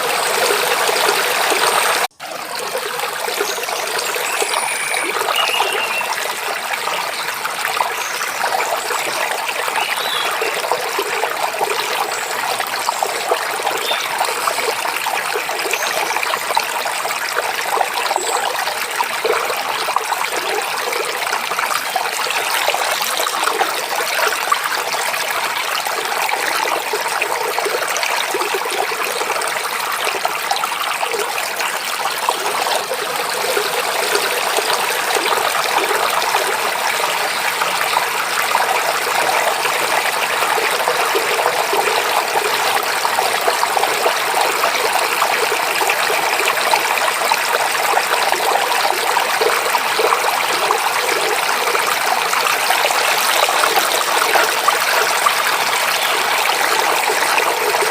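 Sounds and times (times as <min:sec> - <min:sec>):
stream babbling: 0:00.0 - 0:57.9
faint bird chirps: 0:03.5 - 0:06.3.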